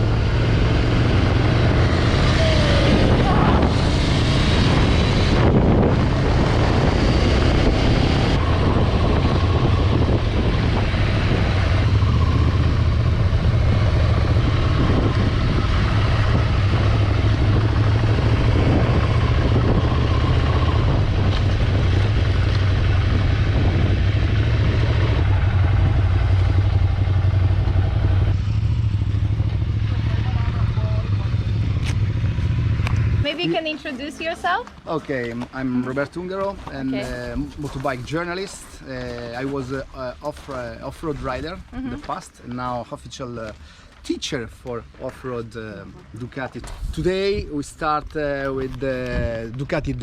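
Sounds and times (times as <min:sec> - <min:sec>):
motorcycle engine running steadily: 0:00.0 - 0:35.5.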